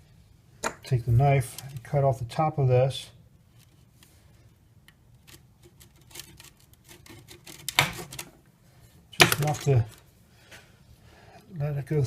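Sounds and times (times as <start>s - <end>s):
clicks and snips: 4.8s - 8.3s
knife cutting plastic tube: 5.1s - 8.3s.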